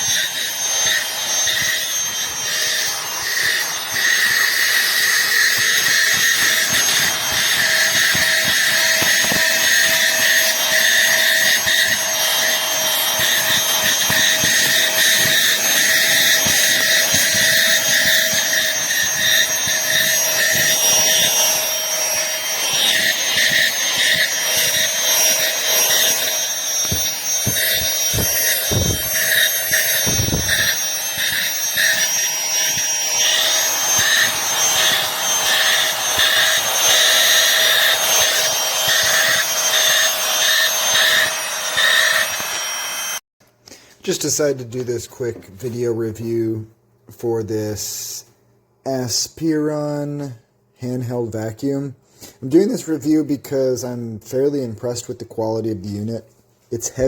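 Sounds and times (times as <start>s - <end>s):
handheld vacuum cleaner running: 0.0s - 43.2s.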